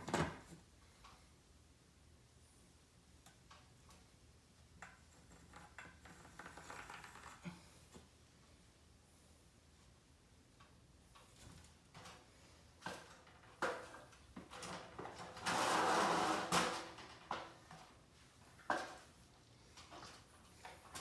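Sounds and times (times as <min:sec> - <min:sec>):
objects knocking and clattering: 0:04.7 - 0:07.6.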